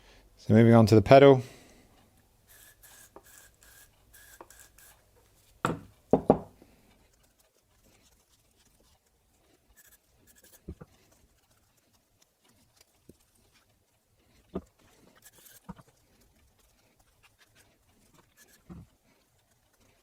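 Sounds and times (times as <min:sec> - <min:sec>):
rag scratching inside pedal: 0:02.5 - 0:05.0.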